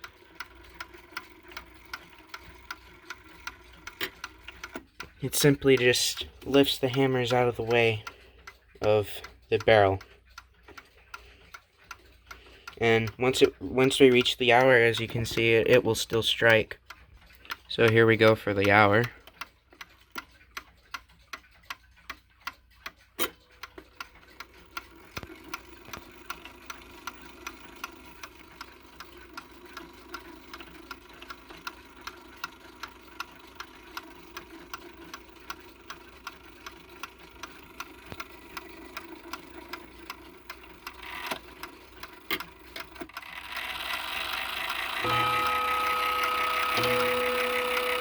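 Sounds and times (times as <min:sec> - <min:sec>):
clock mechanism ticking clicks: 0:00.0 - 0:48.0
clock mechanism knocks: 0:44.2 - 0:48.0.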